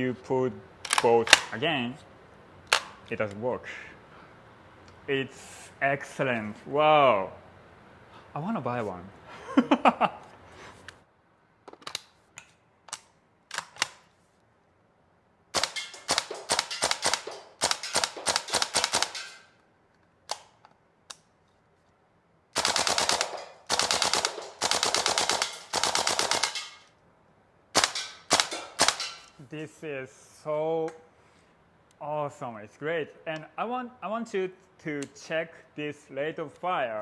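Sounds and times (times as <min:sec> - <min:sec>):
airsoft rifle shots: 0:15.5 - 0:19.5, 0:22.6 - 0:26.9, 0:27.7 - 0:29.4.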